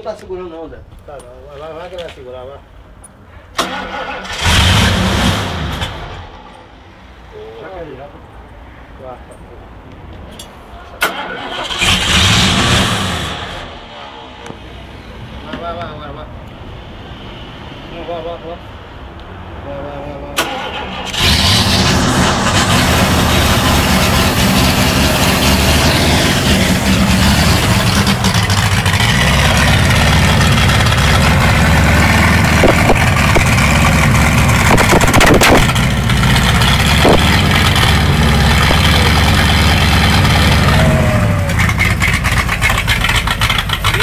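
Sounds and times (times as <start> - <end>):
loud engine running: 21.0 - 44.0.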